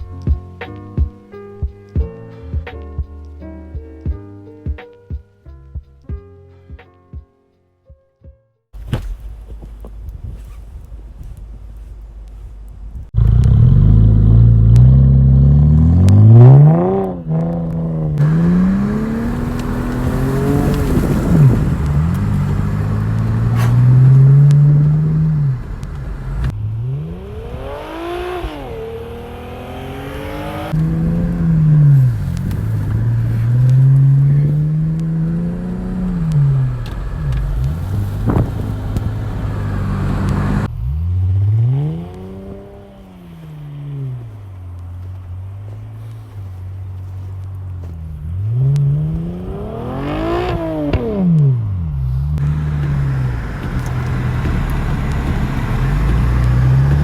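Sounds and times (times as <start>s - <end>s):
engine revving: 13.1s - 57.0s.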